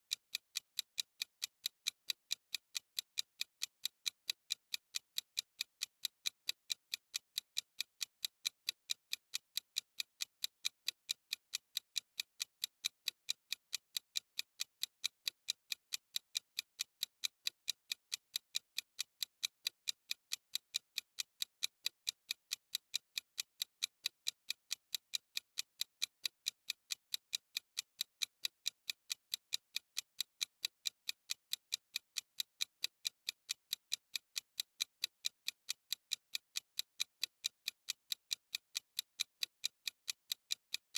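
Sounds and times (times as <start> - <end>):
clock ticking: 0.1 - 40.9.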